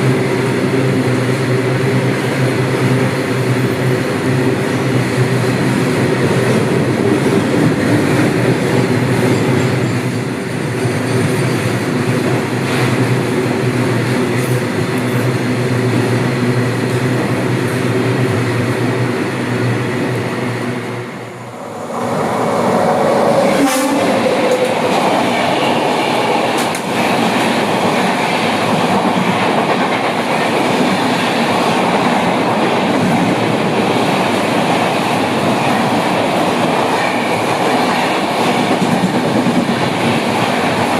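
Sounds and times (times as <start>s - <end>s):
broad rumbling noise: 15.8s - 27.9s
train wheel clatter: 23.1s - 40.9s.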